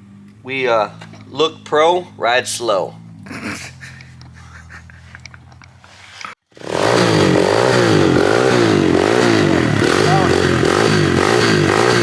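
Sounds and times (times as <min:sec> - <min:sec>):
low hum: 0:00.0 - 0:05.9
small motorbike engine revving: 0:00.0 - 0:12.0.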